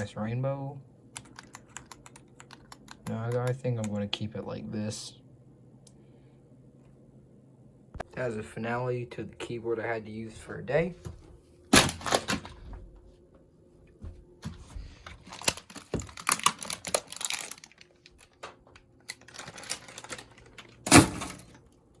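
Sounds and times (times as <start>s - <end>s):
mechanical keyboard clacking: 1.2s - 4.2s.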